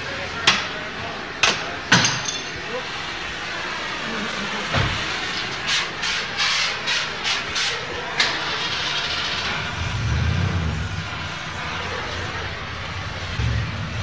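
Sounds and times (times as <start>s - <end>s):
short hissing bursts of air: 2.9s - 14.0s.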